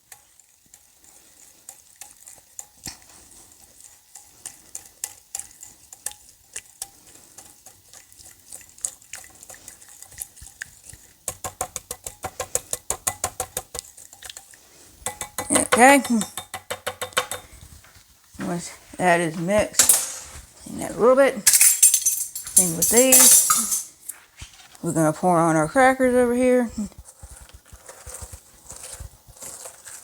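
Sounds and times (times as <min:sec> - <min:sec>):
utensil clicking against bowl: 0:10.4 - 0:17.5.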